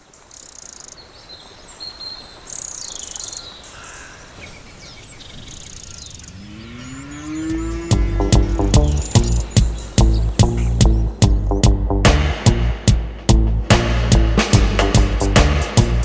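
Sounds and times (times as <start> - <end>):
birds chirping and trilling: 0.0 - 13.4
steady background hiss: 0.0 - 16.0
insect-like buzz: 4.6 - 10.8
upward sweeping tone: 6.1 - 11.4
dub reggae music with deep bass: 7.1 - 16.0.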